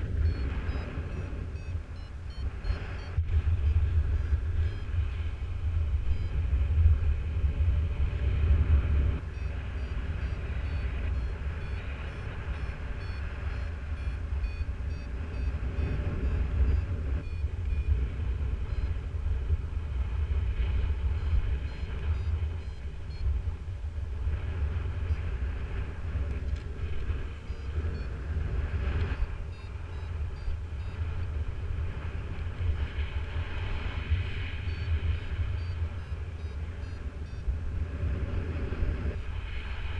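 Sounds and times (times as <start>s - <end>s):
wind buffeting microphone: 0.0s - 39.9s
variometer short high beeps: 0.1s - 5.0s, 6.1s - 6.4s, 9.2s - 18.0s, 18.6s - 19.0s, 21.1s - 23.4s, 27.3s - 28.2s, 28.8s - 31.4s, 34.6s - 37.5s.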